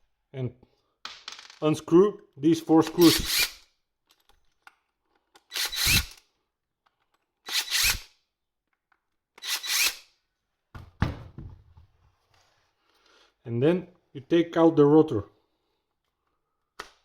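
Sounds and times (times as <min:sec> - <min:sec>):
power screwdriver whining: 0:02.8 - 0:03.6, 0:05.4 - 0:06.2, 0:07.5 - 0:08.1, 0:09.4 - 0:10.0.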